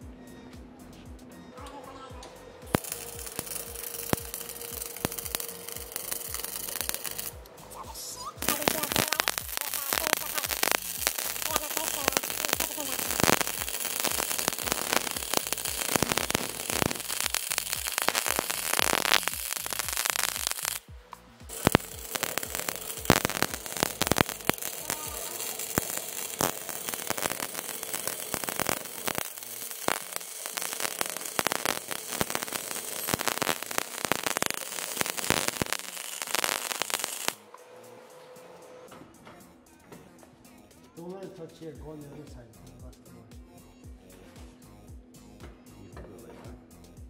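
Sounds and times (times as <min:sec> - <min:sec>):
electric arc welding crackling: 0:02.7 - 0:07.5, 0:08.3 - 0:37.4.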